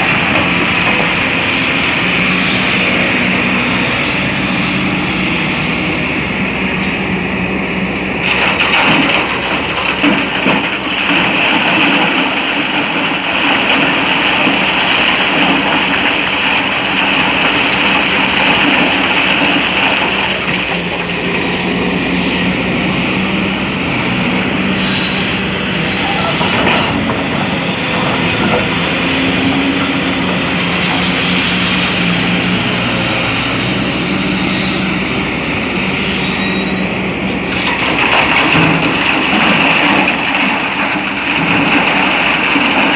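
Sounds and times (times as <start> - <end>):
loud hiss: 0.0 - 10.9, 14.1 - 27.0
excavator diesel engine: 0.0 - 42.9.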